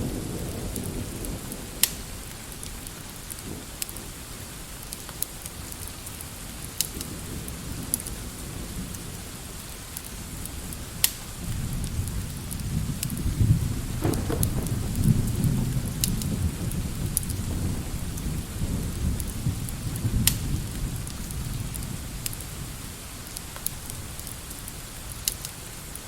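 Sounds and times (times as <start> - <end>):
thunder rumbling: 0.0 - 4.7, 10.1 - 22.8
steady rain: 0.0 - 26.0
sharp crackling pops: 0.5 - 7.2, 9.9 - 13.2, 13.9 - 16.3, 19.2 - 22.5, 23.2 - 25.6.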